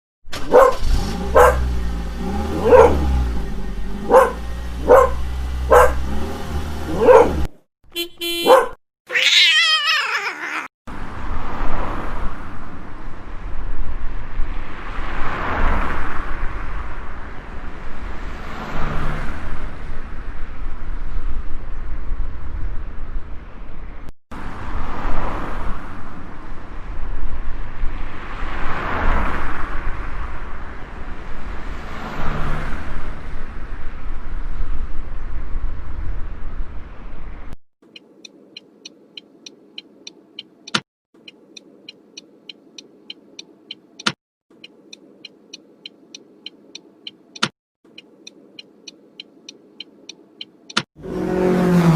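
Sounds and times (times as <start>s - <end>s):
cars passing: 0.3s - 7.5s, 8.2s - 8.6s, 10.9s - 51.9s
dog barking: 0.4s - 1.7s, 2.6s - 3.1s, 4.1s - 6.1s, 6.9s - 7.5s, 8.4s - 8.8s
cat yowling: 8.5s - 10.7s.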